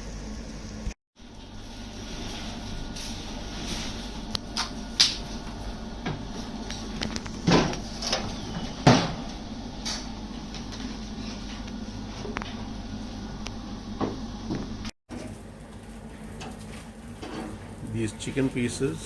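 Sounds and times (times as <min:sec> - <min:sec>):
utensils clattering on grill: 0:15.1 - 0:19.0.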